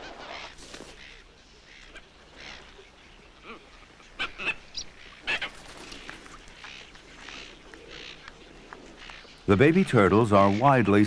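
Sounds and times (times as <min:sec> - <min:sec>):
herons squawking: 0:00.0 - 0:11.0.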